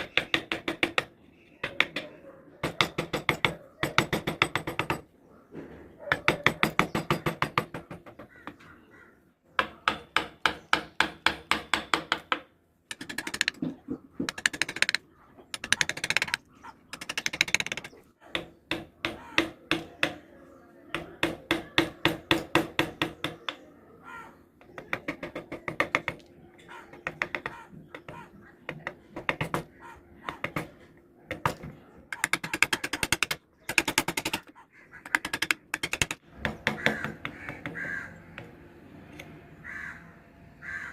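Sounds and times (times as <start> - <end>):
mallet striking chisel into wood: 0.0 - 2.0, 9.6 - 15.0, 15.6 - 20.2, 20.9 - 23.6, 31.4 - 37.8.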